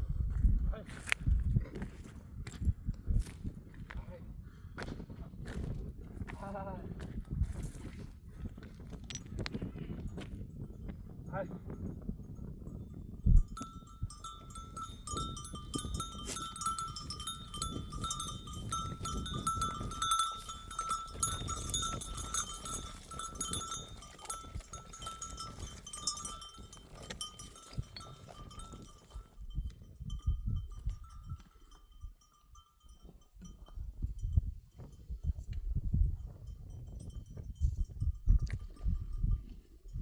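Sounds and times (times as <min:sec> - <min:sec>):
livestock bells jingling: 0:12.3 - 0:35.1, 0:36.2 - 0:39.5.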